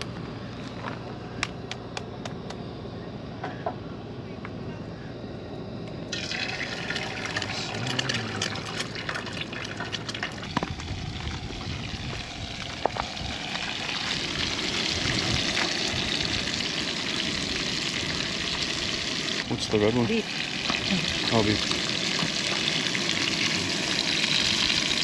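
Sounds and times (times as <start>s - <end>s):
food sizzling in a pan: 11.7s - 25.0s.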